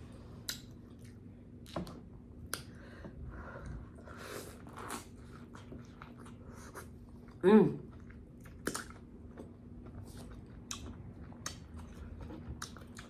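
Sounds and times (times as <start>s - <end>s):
person chewing: 4.2s - 13.0s.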